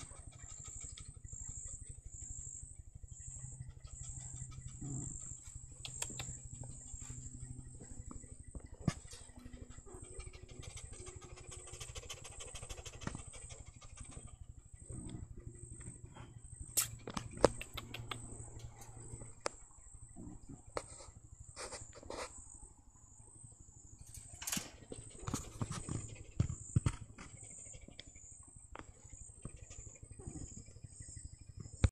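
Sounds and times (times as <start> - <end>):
sharp clicks and knocks: 16.8 - 19.6.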